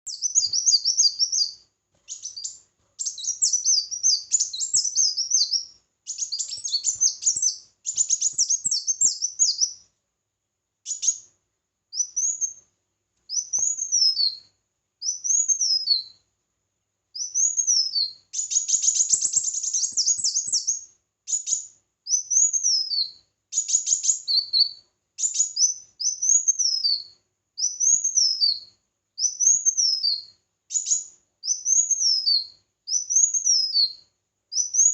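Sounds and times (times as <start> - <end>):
songbird singing: 0.0 - 9.9, 10.8 - 11.3, 11.9 - 12.6, 13.3 - 16.2, 17.1 - 34.9.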